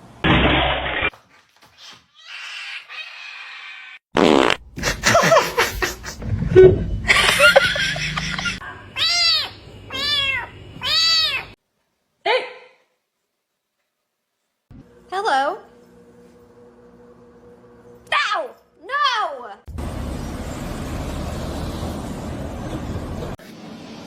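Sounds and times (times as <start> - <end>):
cat meowing: 9.0 - 11.6.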